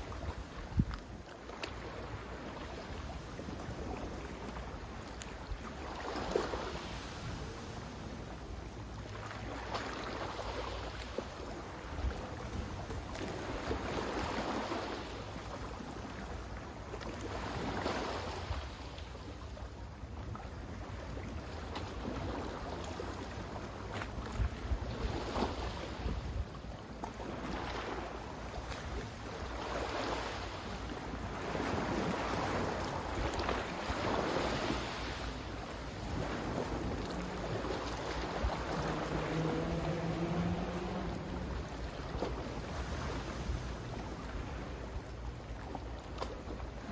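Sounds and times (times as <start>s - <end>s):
sea water lapping: 0.0s - 46.9s
waves washing on shore: 20.6s - 46.9s.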